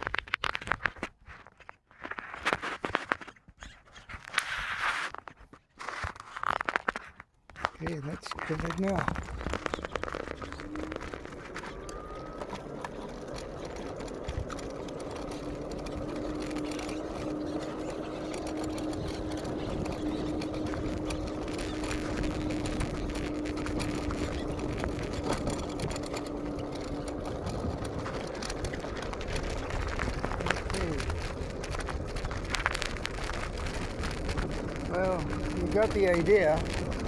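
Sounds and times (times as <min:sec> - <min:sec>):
small motor humming: 0:08.4 - 0:37.0.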